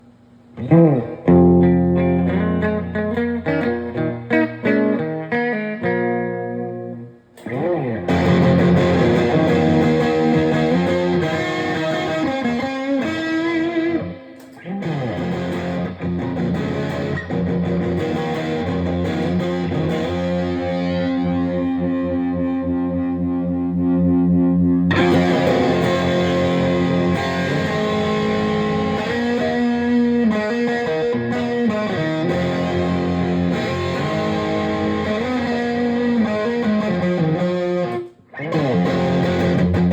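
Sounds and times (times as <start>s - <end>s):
electric guitar chords and riffs: 0.6s - 39.9s.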